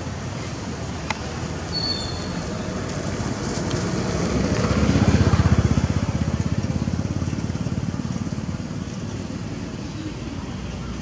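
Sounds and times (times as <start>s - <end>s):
vehicle engine passing by: 2.4s - 9.4s.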